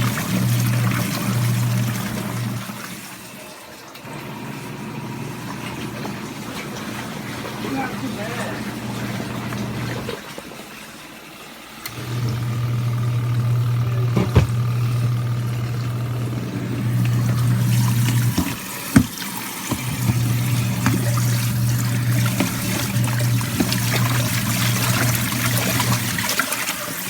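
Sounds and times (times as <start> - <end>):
water sloshing and trickling: 0.0 - 27.0
electric motor humming: 11.8 - 19.1, 19.7 - 26.3.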